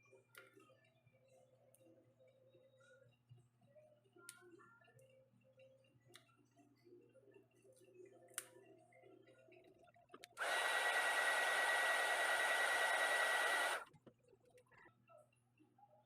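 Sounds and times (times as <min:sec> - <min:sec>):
heat gun blowing and whining: 0:10.4 - 0:13.8.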